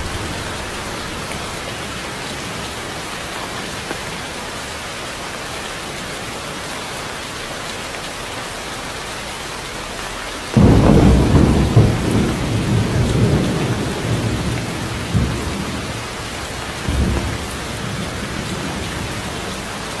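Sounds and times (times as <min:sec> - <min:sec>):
thunder rumbling: 0:00.0 - 0:04.3, 0:10.6 - 0:20.0
heavy rain: 0:00.0 - 0:20.0.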